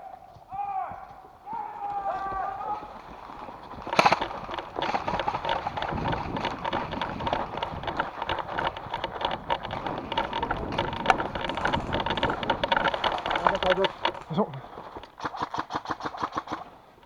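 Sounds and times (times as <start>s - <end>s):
wind buffeting microphone: 0.0s - 15.3s
running footsteps: 0.0s - 17.0s
gear rattling: 1.8s - 16.7s
clothing rustling: 1.9s - 15.2s.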